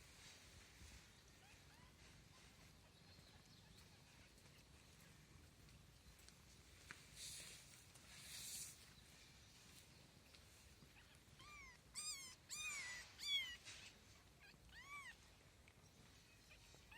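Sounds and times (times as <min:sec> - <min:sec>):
short hissy noises: 0:07.1 - 0:08.8
kittens mewing: 0:10.9 - 0:15.2.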